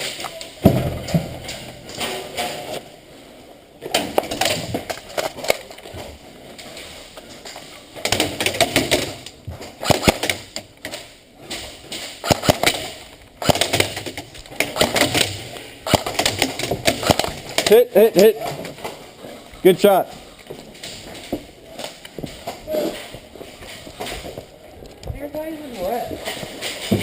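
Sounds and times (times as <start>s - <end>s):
airsoft guns firing: 9.8s - 10.6s, 12.1s - 17.9s.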